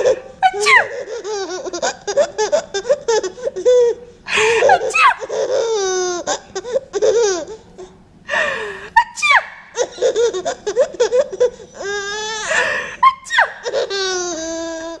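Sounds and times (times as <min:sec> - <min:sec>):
baby laughing: 0:00.0 - 0:07.9, 0:09.0 - 0:15.0.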